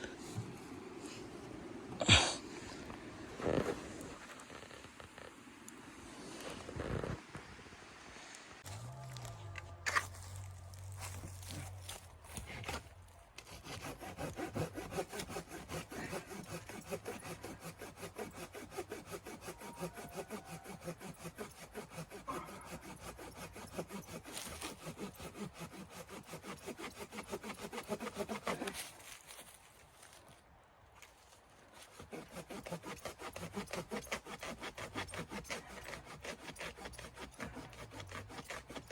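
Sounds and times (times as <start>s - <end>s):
hand saw cutting wood: 9.9s - 30.2s, 31.7s - 38.9s.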